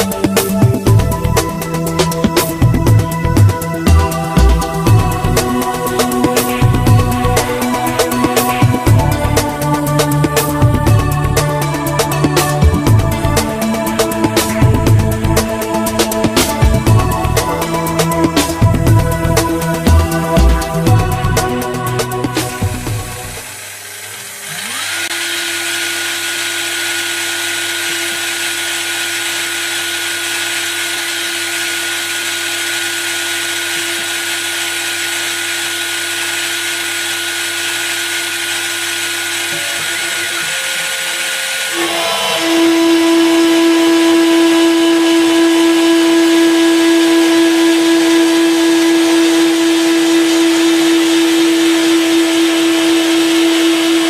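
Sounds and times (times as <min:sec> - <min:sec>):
milling machine spindle whining: 0:00.0 - 0:54.0.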